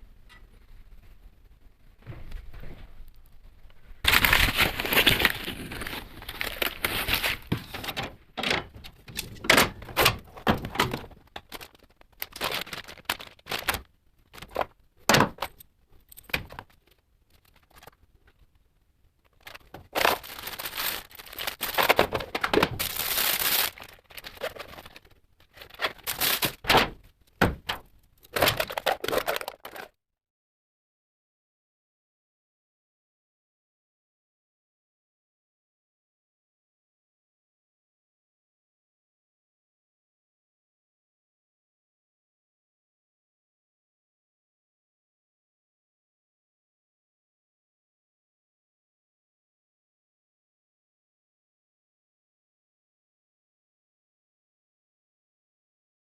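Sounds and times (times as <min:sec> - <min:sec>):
packaging scraping and rustling: 0:04.0 - 0:14.7, 0:19.4 - 0:27.0, 0:28.3 - 0:30.0.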